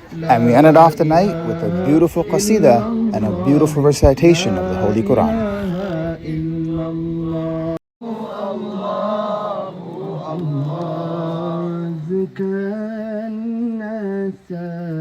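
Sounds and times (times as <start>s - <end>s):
person chanting melodically: 0.0s - 15.0s.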